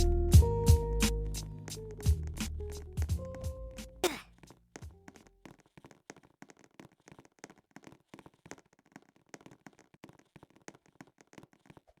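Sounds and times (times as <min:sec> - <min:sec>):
faint clicks and crackles: 0:04.4 - 0:12.0.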